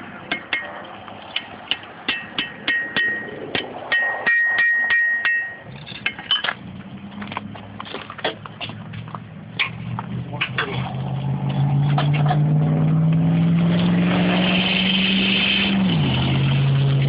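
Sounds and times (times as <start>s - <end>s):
hammer striking metal on anvil: 0.3s - 6.5s.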